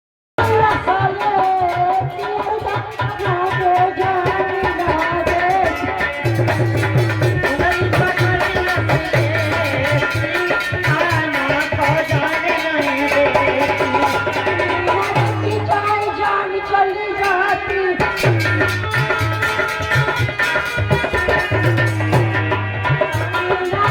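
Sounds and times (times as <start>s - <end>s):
hand drum beat: 0.4s - 16.4s, 18.0s - 23.9s
wavering melody: 12.2s - 23.9s.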